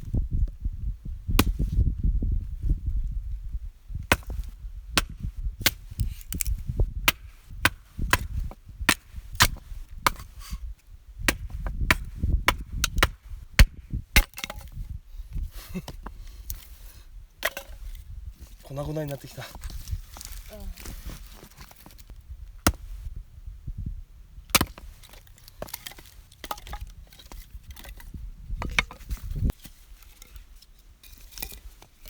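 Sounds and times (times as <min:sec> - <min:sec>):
axe chopping wood: 0:01.4 - 0:01.6, 0:04.1 - 0:05.8, 0:06.4 - 0:10.3, 0:11.3 - 0:14.8, 0:17.4 - 0:17.8, 0:22.6 - 0:22.8, 0:24.5 - 0:28.0, 0:28.6 - 0:29.2.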